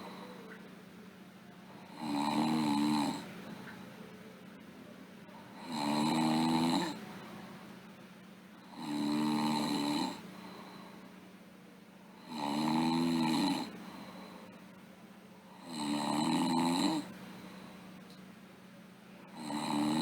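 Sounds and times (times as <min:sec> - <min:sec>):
girl snoring: 0:01.8 - 0:03.3, 0:05.6 - 0:07.0, 0:08.7 - 0:10.2, 0:12.2 - 0:13.8, 0:15.6 - 0:17.1, 0:19.3 - 0:20.0.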